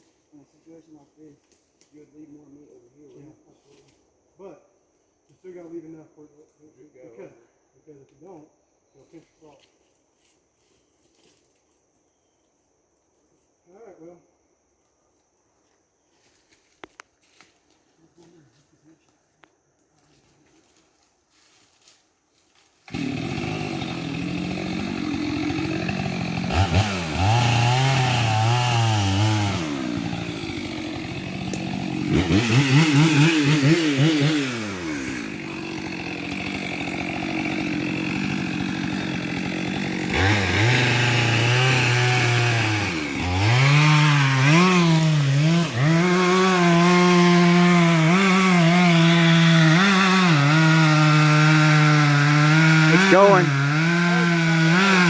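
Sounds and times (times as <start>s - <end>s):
chainsaw cutting tree trunk: 22.9s - 55.0s.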